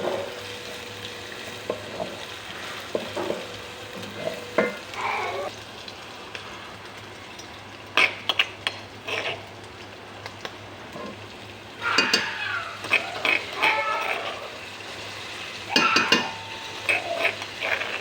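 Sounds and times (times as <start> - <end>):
chicken sizzling in a pan: 0.0 - 18.0
metal spatula knocking pan: 15.7 - 16.4.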